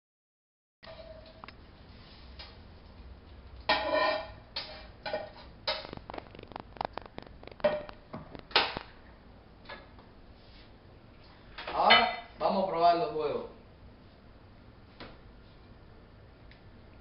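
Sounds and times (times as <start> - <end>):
metal utensil scraping frying pan: 3.7 - 6.0.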